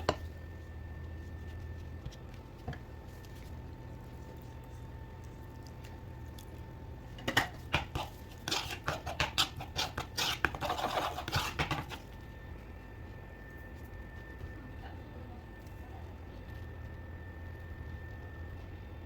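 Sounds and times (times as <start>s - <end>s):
steady low hum: 0.0s - 19.0s
kitchen utensils clicking and scraping: 7.2s - 12.1s.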